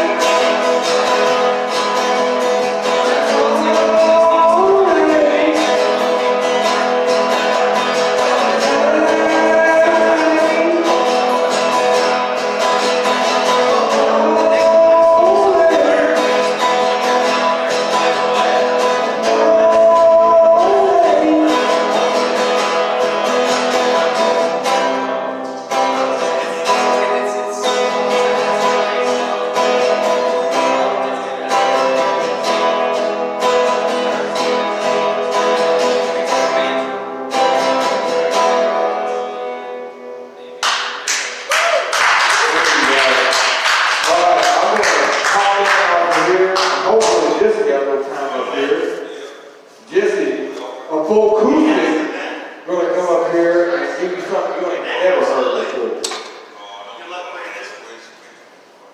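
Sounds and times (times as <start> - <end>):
person singing: 0.0 - 25.0, 25.7 - 39.6
acoustic guitar strumming: 0.0 - 56.6.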